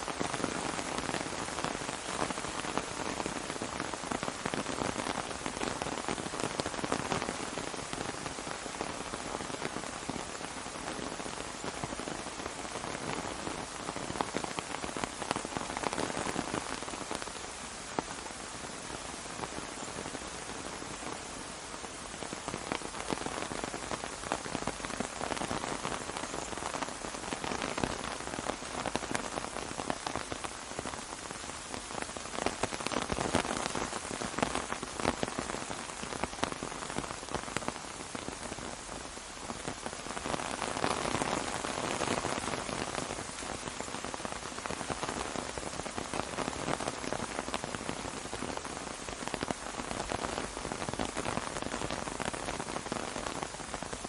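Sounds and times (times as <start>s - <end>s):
rain on an umbrella: 0.0s - 54.0s.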